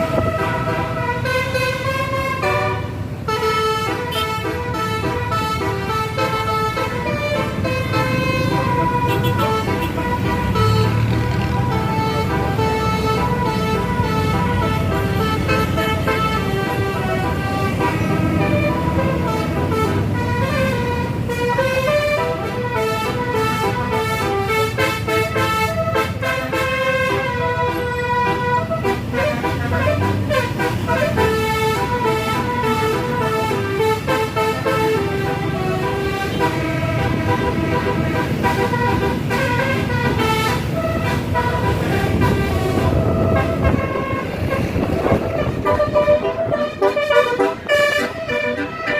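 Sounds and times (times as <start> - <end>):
engine and road noise: 0.0 - 48.9
multi-tone bus horn tune: 0.0 - 48.9.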